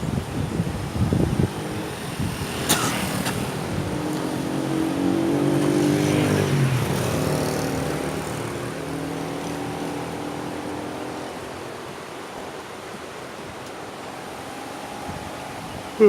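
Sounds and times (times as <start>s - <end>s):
motor vehicle passing: 1.2s - 13.4s.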